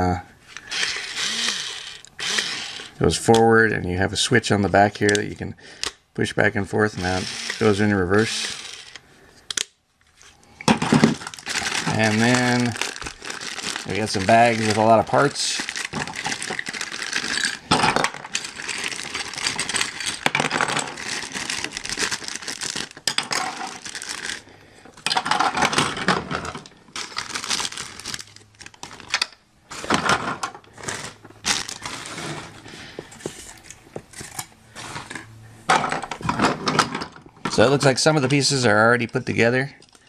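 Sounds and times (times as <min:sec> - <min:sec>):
plastic bags crinkling: 0:07.0 - 0:09.0, 0:10.4 - 0:35.1
plastic toy pieces clicking: 0:07.0 - 0:09.7.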